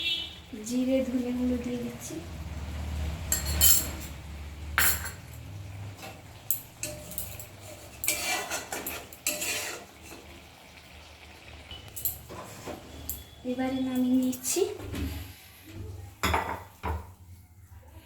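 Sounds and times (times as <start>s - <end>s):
utensil scraping a pan: 5.9s - 10.6s, 12.2s - 13.4s.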